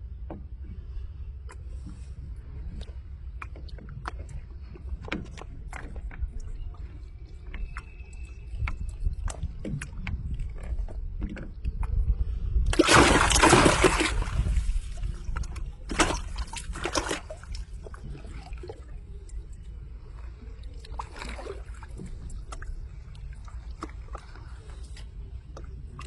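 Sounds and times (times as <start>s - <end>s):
steady low rumble: 0.0s - 26.0s
water splashing: 12.7s - 19.6s, 20.6s - 26.0s.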